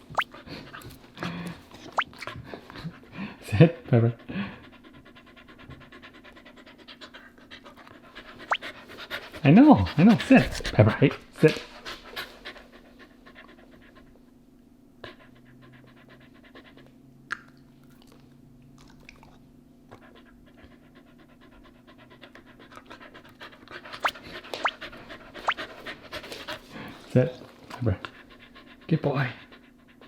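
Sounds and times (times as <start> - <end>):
dog panting rapidly: 2.5 - 14.3, 15.0 - 17.0, 19.9 - 30.0.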